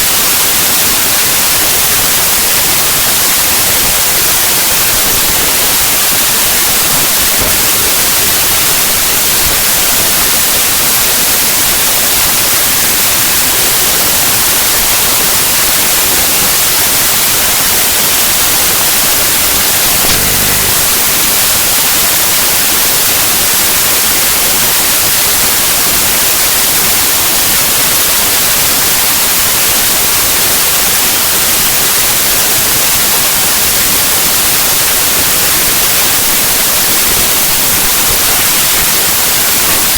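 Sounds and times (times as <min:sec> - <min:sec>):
harsh static noise: 0:00.0 - 0:39.9
low blip: 0:19.9 - 0:21.8.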